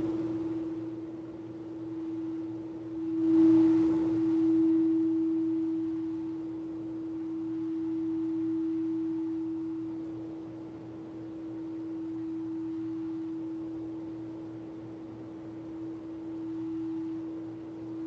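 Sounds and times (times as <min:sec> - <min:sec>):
singing bowl ringing: 0:00.0 - 0:14.8, 0:15.6 - 0:18.0.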